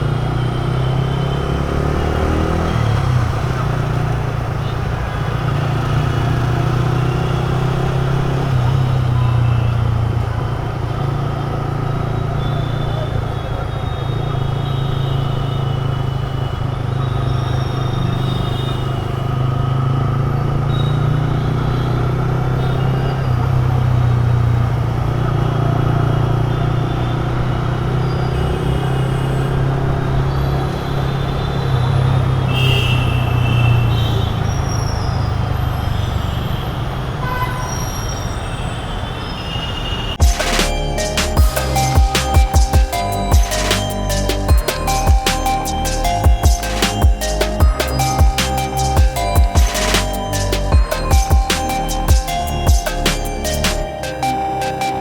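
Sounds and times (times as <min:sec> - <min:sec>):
motorcycle engine: 0:00.0 - 0:13.1
road rumble: 0:00.0 - 0:55.0
vehicle horn honks: 0:32.5 - 0:34.4, 0:37.2 - 0:37.9.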